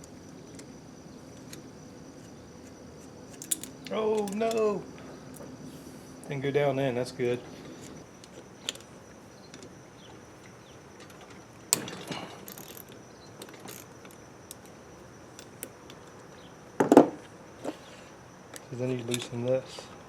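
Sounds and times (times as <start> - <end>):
metallic clicks of hand tools: 3.3 - 4.7
ratcheting rattle: 11.0 - 14.7.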